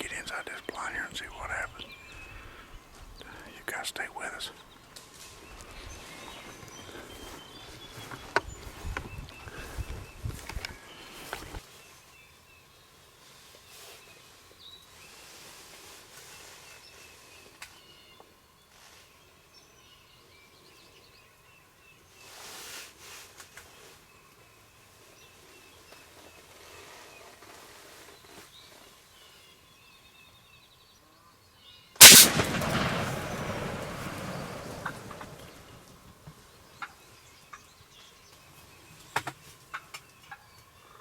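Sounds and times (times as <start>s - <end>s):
faint songbird chirps: 0.0s - 15.3s, 23.6s - 41.0s
loud echoing gunshot: 32.0s - 36.0s.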